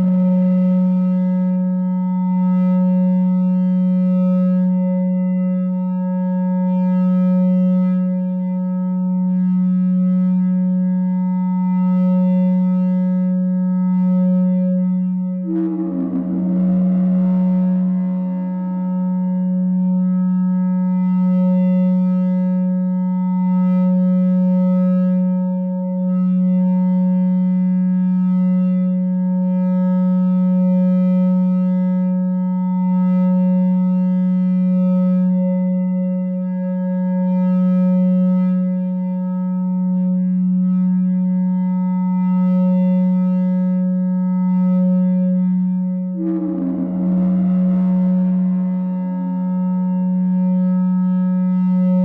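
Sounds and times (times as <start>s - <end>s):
feedback drone low hum: 14.5s - 21.7s, 45.8s - 52.0s.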